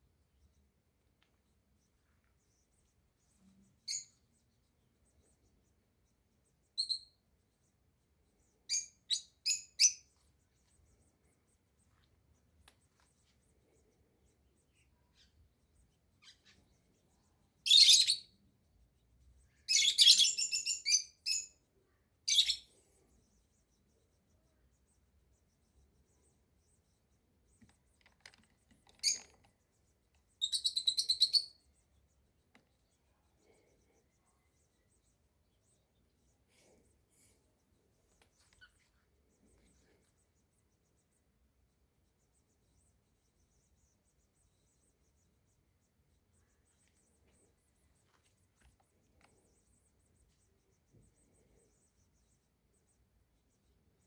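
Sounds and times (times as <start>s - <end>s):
small bird chirping: 0.0s - 54.0s
bird chirping and trilling: 3.9s - 4.2s, 6.7s - 7.2s, 8.7s - 10.1s, 17.6s - 18.4s, 19.7s - 21.6s, 22.3s - 22.7s, 28.3s - 29.4s, 30.4s - 31.6s.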